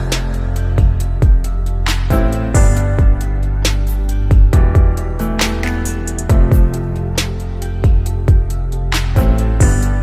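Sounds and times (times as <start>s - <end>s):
deep kick drum: 0.8s - 3.4s, 4.3s - 5.2s, 6.3s - 6.9s, 7.8s - 8.6s, 9.2s - 10.0s.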